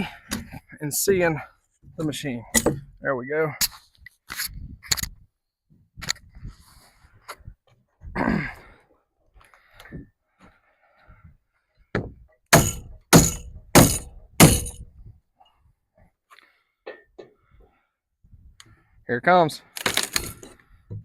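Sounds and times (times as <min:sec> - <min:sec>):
heavy blows on wooden boards: 0:11.9 - 0:14.9
board creaking as pried: 0:19.8 - 0:21.0.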